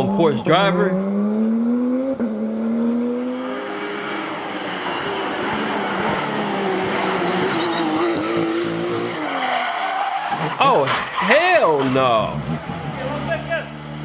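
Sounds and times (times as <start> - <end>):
race car engine accelerating: 0.3 - 9.1.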